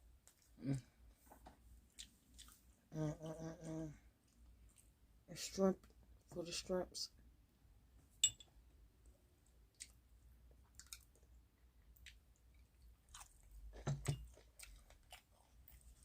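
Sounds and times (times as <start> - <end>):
person chewing food: 0.2 - 2.9, 4.2 - 5.0, 9.6 - 16.0.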